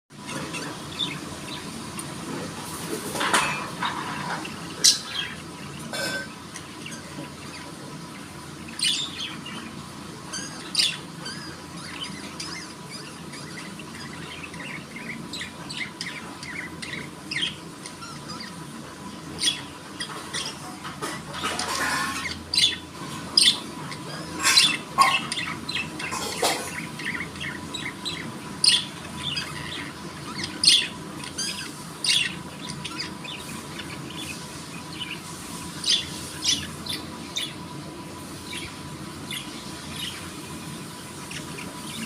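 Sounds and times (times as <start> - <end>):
budgerigar chirping and chattering: 3.3 - 5.9, 8.6 - 20.7, 21.3 - 37.7
sharp budgerigar calls: 8.6 - 18.6, 21.7 - 35.2.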